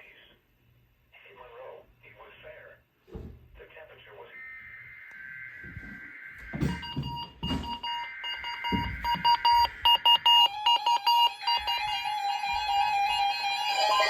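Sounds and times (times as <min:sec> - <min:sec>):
electronic alarm tone: 0:04.3 - 0:14.0.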